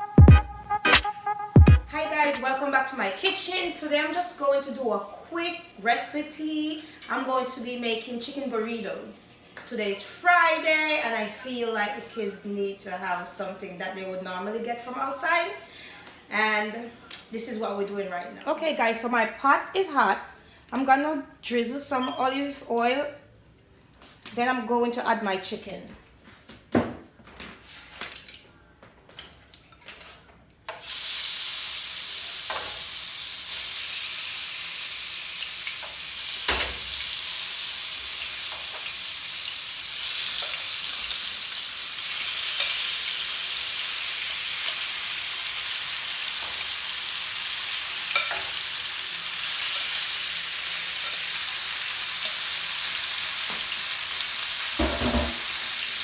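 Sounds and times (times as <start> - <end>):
chicken sizzling in hot oil: 30.7 - 56.0.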